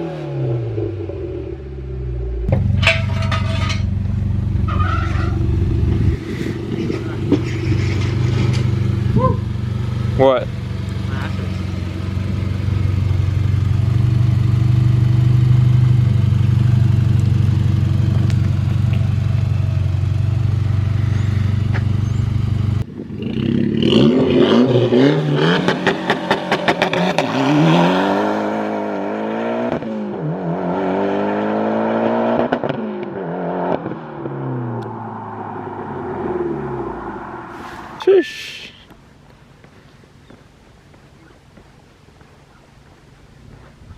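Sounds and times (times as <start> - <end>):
car exhaust drone: 0.4 - 28.2
exhaust crackle: 1.0 - 27.6
car accelerating hard: 23.2 - 38.1.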